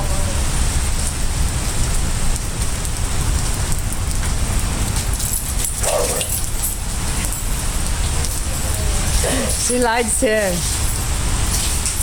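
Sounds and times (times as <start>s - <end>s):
steady rain falling: 0.0s - 12.0s.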